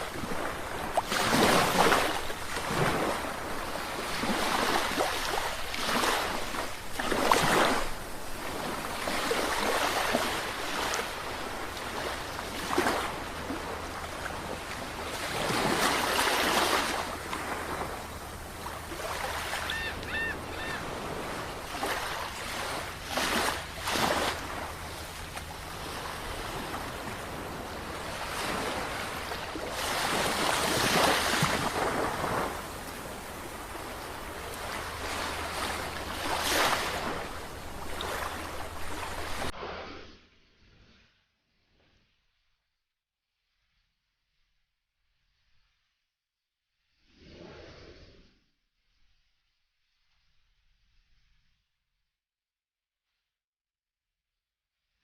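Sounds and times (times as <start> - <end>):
sea waves breaking: 0.0 - 39.6.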